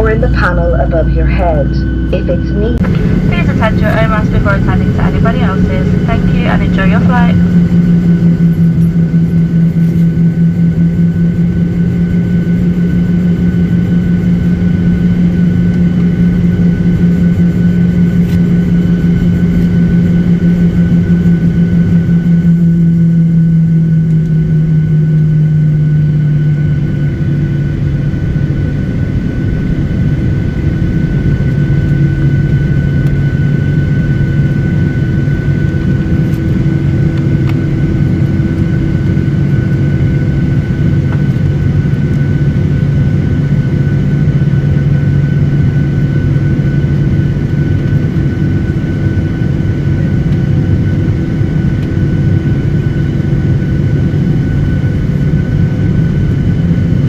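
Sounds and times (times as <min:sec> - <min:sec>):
cabin air noise: 0:00.0 - 0:08.4
high engine whine: 0:00.0 - 0:57.0
jet engines humming: 0:00.0 - 0:57.0.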